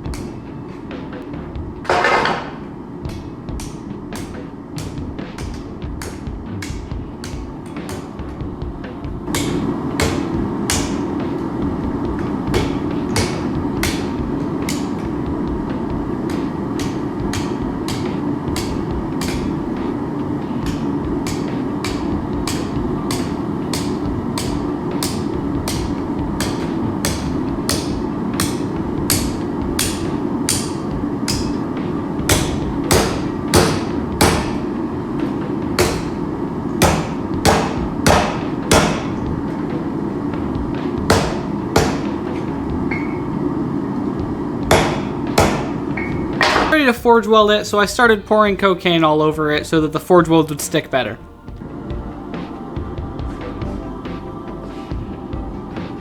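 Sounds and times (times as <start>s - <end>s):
hammer striking steel on anvil: 0.0s - 1.2s, 1.8s - 8.5s, 9.3s - 11.5s, 12.1s - 39.3s, 41.0s - 43.3s, 44.6s - 46.8s.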